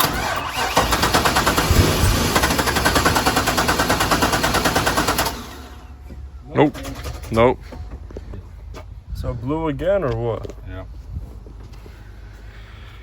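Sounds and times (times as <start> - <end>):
engine starter cranking: 0.0 - 5.9, 6.6 - 7.6.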